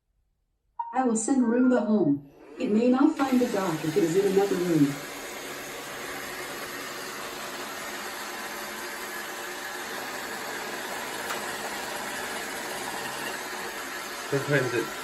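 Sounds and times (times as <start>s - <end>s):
robot vacuum running: 2.3s - 15.0s.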